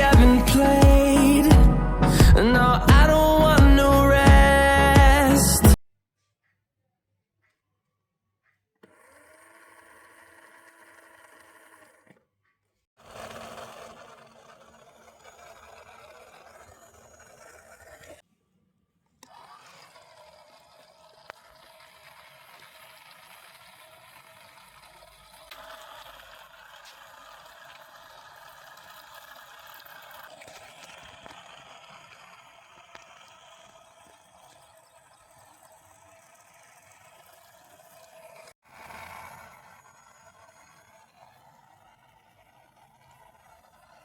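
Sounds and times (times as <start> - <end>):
small electric motor with scraping rattle: 8.8 - 12.2, 13.0 - 18.2, 19.2 - 44.0.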